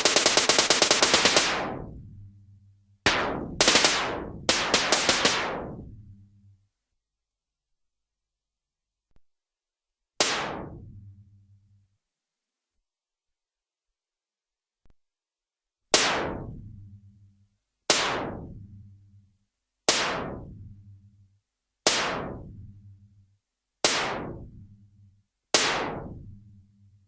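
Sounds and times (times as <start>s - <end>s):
gas gun shots: 0.0s - 1.7s, 3.1s - 5.5s.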